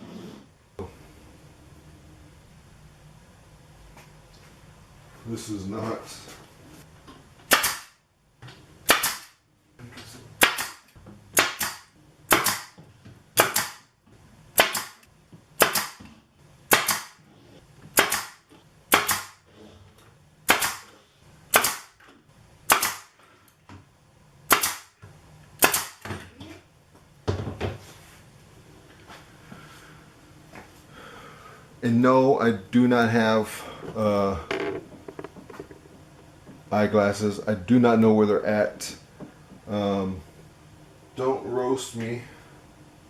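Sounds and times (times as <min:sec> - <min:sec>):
pneumatic nailer firing nails: 0:07.4 - 0:08.0, 0:08.8 - 0:09.4, 0:10.4 - 0:12.8, 0:13.4 - 0:13.9, 0:14.5 - 0:17.2, 0:17.9 - 0:19.5, 0:20.4 - 0:22.0, 0:22.6 - 0:23.2, 0:24.5 - 0:25.0, 0:25.6 - 0:26.2.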